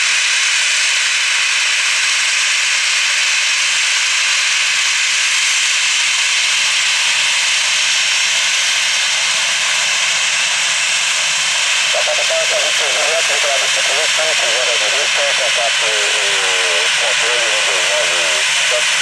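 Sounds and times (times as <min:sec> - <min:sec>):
jet engines running: 0:06.7 - 0:19.0.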